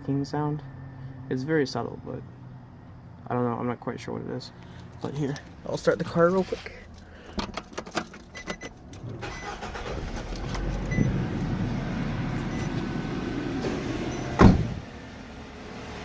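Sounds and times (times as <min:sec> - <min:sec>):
car engine cranking and idling: 0:04.6 - 0:16.0
ignition clicks: 0:07.4 - 0:11.6
loud thump: 0:14.3 - 0:14.8.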